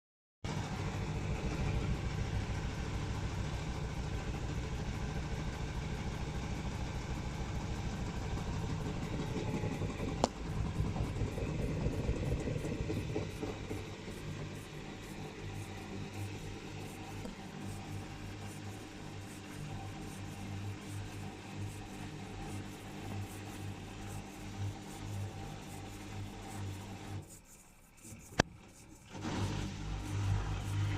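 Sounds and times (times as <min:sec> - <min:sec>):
washing machine knocking rumble: 0:00.5 - 0:15.0.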